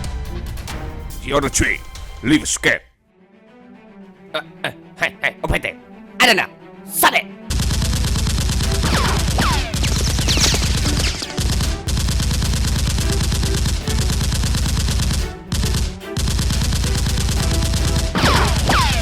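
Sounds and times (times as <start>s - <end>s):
automatic gunfire bursts: 7.5s - 19.0s.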